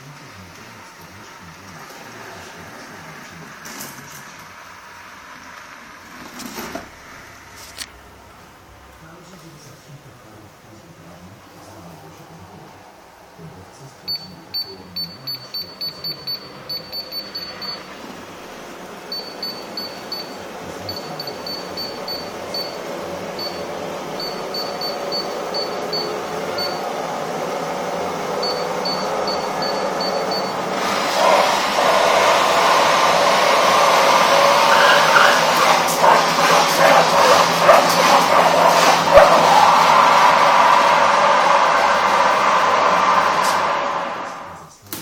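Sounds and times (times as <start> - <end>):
vacuum cleaner running: 0.0 - 7.8, 14.4 - 44.8
short high beeps: 14.1 - 17.9, 19.1 - 22.8, 23.4 - 26.8, 28.4 - 30.6.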